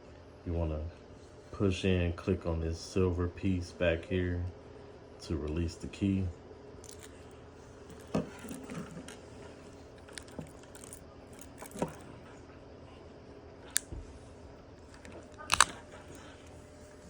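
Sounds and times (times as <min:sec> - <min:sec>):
key fob clicks and plastic knocks: 0:10.0 - 0:12.0, 0:14.8 - 0:16.3.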